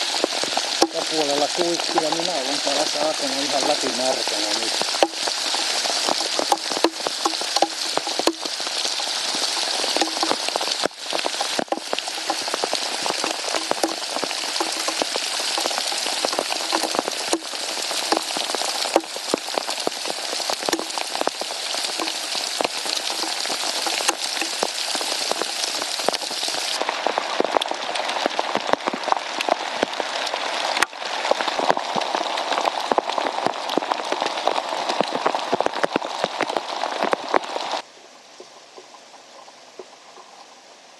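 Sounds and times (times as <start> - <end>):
heavy rain pouring: 0.0 - 37.9.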